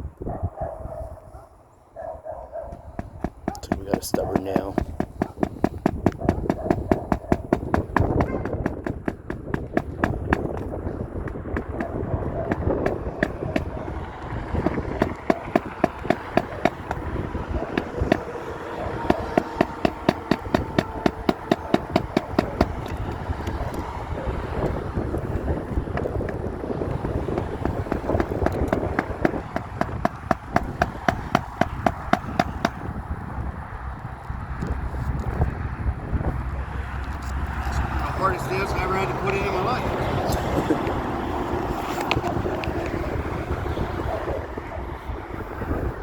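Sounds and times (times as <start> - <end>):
hammer striking a nail: 2.7 - 24.0, 24.6 - 33.0.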